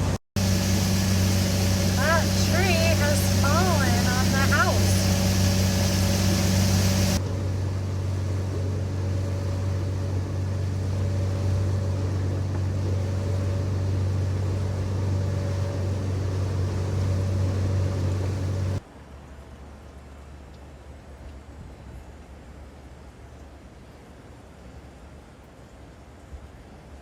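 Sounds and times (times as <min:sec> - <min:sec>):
boat engine droning: 0:00.0 - 0:18.8.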